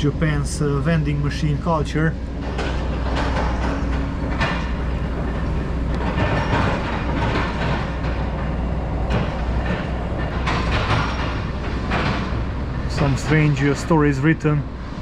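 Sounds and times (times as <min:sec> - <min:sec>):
traffic rumble: 0:00.0 - 0:15.0
rattling: 0:02.4 - 0:14.0.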